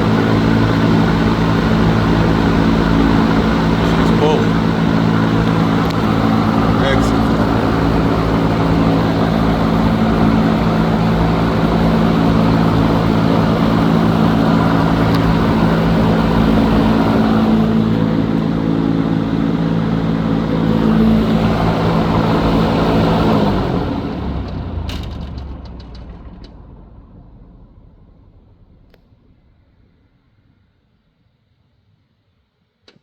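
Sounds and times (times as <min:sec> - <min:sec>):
electric fan running: 0:00.0 - 0:24.9.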